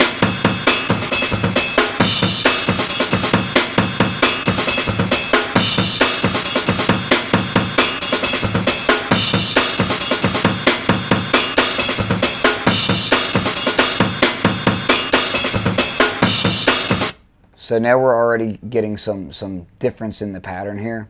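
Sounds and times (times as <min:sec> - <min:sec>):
sliced drum break loop: 0:00.0 - 0:17.2.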